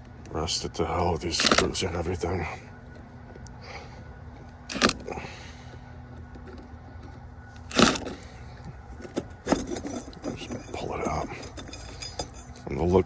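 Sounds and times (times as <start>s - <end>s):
hand tools clinking and scraping: 1.3s - 2.2s, 4.7s - 5.2s, 6.4s - 13.0s.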